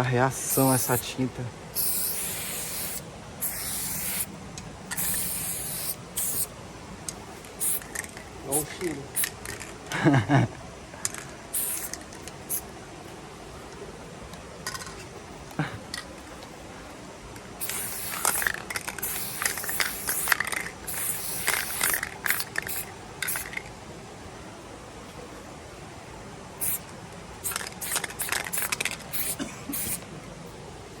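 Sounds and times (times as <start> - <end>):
spray paint can hissing: 0.4 - 1.1, 1.7 - 4.3, 4.9 - 6.5, 7.5 - 8.6, 9.2 - 9.6, 11.5 - 12.6, 17.6 - 23.6, 26.6 - 26.8, 27.4 - 30.0.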